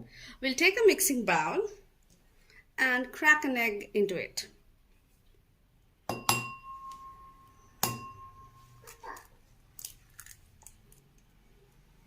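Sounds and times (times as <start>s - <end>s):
bowl ringing: 6.1s - 8.8s.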